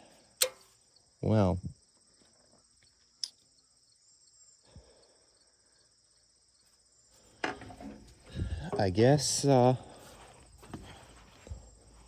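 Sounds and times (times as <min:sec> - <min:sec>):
insects chirping: 0:00.0 - 0:12.0
sharp click: 0:00.4 - 0:00.7.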